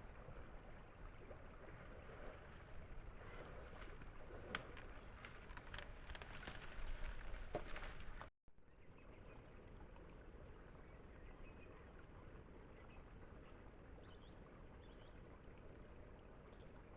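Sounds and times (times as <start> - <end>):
sharp clicks in water: 3.8 - 8.3.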